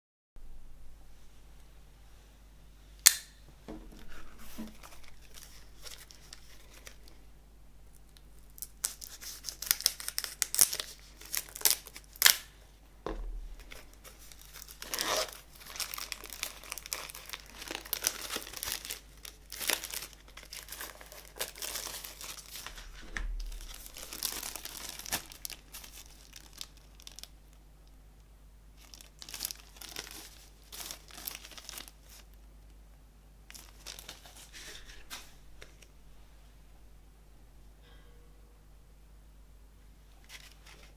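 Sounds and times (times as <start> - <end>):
plastic wrap crinkling: 3.8 - 7.2, 7.9 - 12.6, 13.3 - 27.6, 28.8 - 32.5, 33.5 - 35.9, 40.2 - 40.9.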